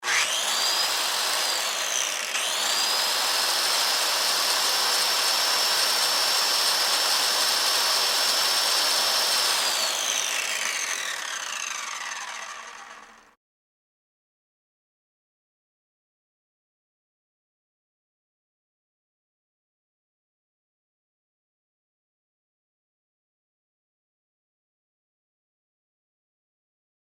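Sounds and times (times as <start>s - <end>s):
electric drill whining and grinding: 0.0s - 13.4s.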